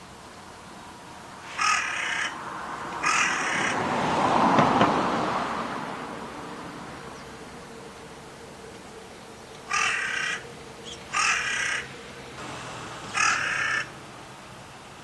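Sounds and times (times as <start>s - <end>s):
crow cawing: 1.4s - 4.0s, 9.6s - 12.0s, 13.1s - 14.0s.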